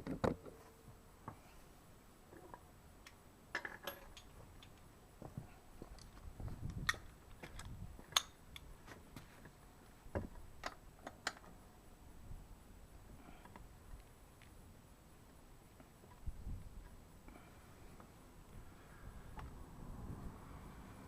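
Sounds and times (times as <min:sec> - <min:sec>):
metal tools clinking and knocking: 0:03.6 - 0:04.7.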